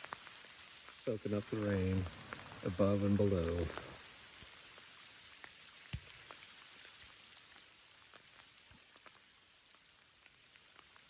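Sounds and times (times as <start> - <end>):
light rain hiss: 0.0 - 11.0
single raindrops falling: 0.0 - 11.0.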